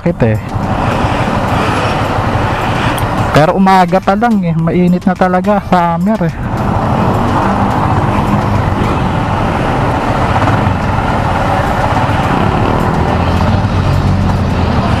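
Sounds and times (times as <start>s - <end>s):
road and wind noise: 0.0s - 15.0s
motorcycle engine running: 6.3s - 15.0s.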